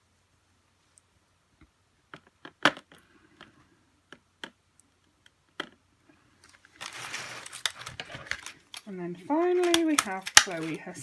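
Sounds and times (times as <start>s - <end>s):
plastic clicks and taps: 9.6s - 10.8s.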